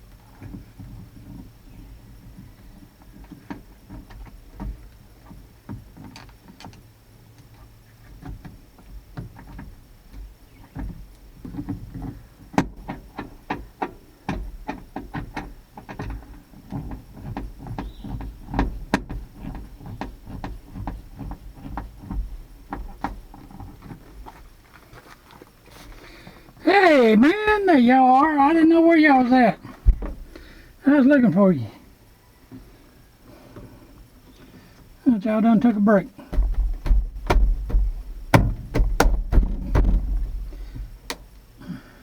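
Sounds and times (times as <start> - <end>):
light clicks and knocks on truck door: 36.3 - 41.4.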